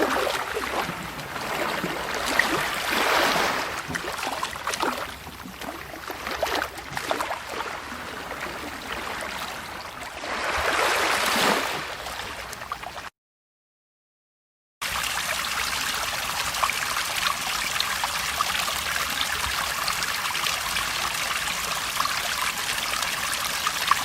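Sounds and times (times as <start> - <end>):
small waves lapping and splashing: 0.0 - 13.1.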